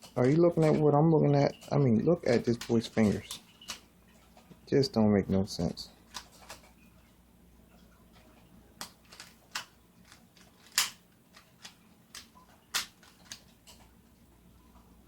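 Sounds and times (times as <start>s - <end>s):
puzzle cube clicking: 8.8s - 13.5s.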